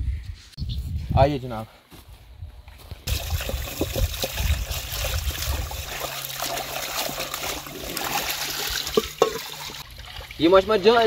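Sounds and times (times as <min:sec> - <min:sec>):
water trickling and splashing: 0:03.1 - 0:11.0.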